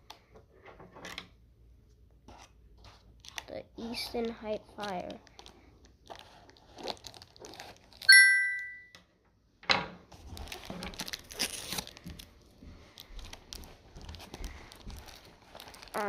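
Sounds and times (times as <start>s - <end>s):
cardboard crinkling and tearing: 4.8s - 8.1s, 10.1s - 16.0s
bright ringing ding: 8.1s - 8.9s.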